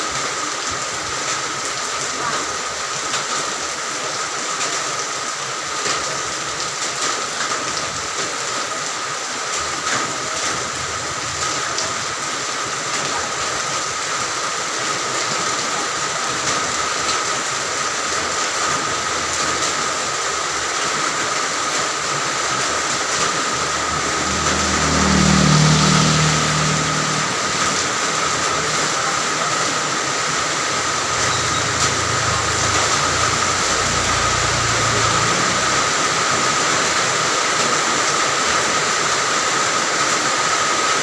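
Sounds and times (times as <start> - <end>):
steady rain falling: 0.0 - 41.0
vehicle passing on road: 21.5 - 39.5.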